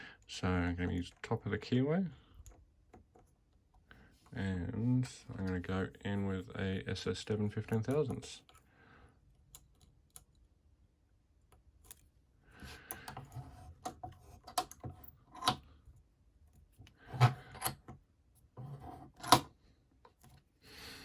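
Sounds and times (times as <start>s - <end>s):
lock picks scraping in keyway: 14.2s - 15.7s, 17.1s - 18.0s, 19.1s - 19.5s.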